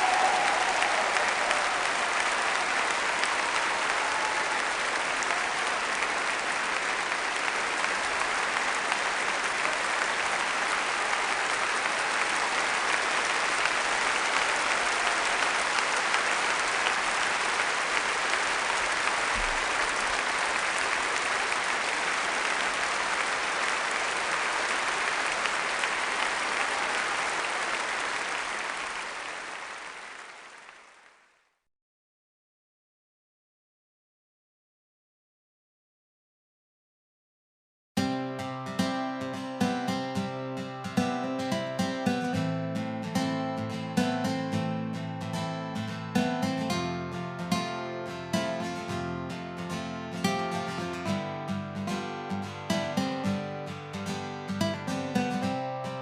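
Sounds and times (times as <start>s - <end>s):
large audience applauding: 0.0s - 31.4s, 43.3s - 56.0s.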